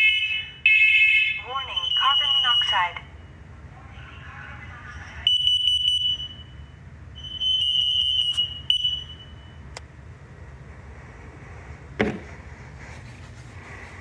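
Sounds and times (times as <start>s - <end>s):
smoke alarm tone: 0.7s - 3.0s, 5.3s - 9.8s
thump: 12.0s - 12.4s.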